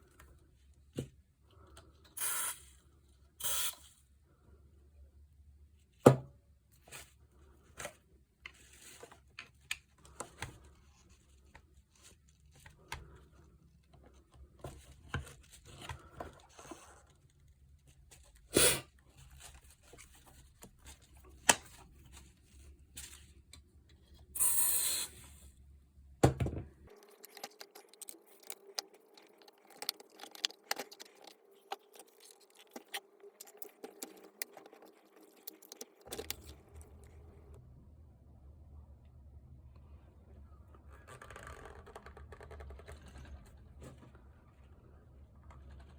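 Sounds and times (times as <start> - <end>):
short hiss: 24.4 - 25.4.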